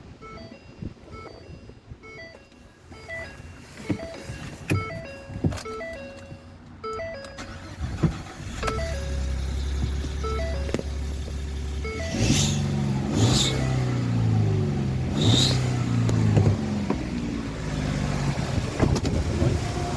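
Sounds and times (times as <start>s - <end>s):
truck engine cranking and idling: 0.0s - 19.9s
electronic beeping tune: 0.2s - 7.5s, 8.5s - 11.0s, 11.8s - 12.6s.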